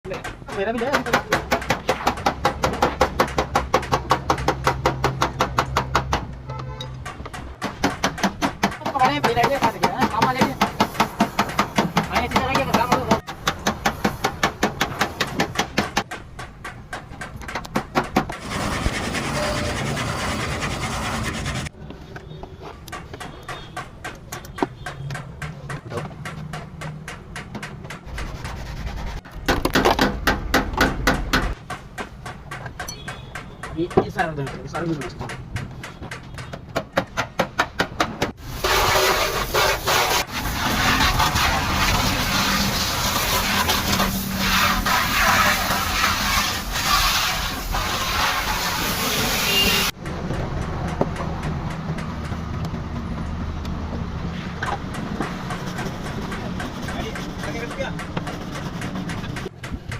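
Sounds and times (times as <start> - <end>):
rapid knocking: 7.0 - 19.4, 29.2 - 38.4, 54.7 - 59.9.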